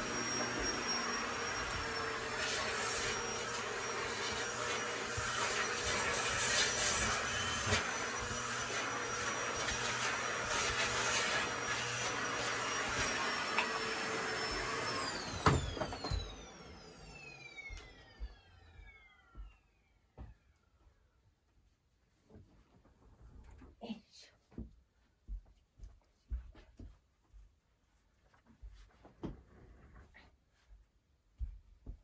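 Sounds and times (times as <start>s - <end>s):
vacuum cleaner whining: 0.0s - 20.7s.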